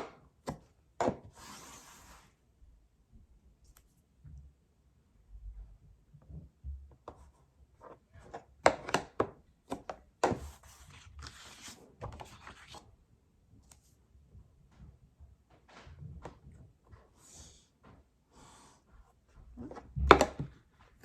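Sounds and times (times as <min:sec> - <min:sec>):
paper rustling scrapes: 0:01.3 - 0:02.4, 0:10.4 - 0:12.8.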